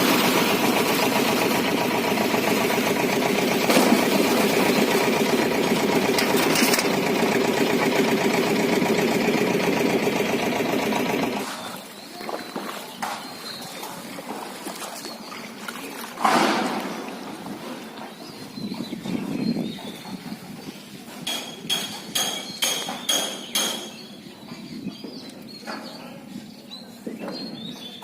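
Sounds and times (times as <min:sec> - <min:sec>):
small engine running: 0:00.0 - 0:11.6.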